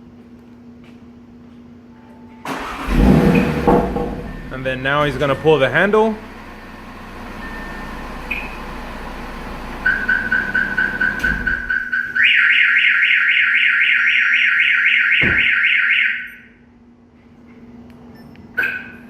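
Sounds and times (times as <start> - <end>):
car engine idling: 2.5 - 12.0
single thump: 3.3 - 4.4, 15.2 - 15.5
rapid alarm beeping: 9.8 - 16.5
car alarm siren warbling: 9.8 - 16.6.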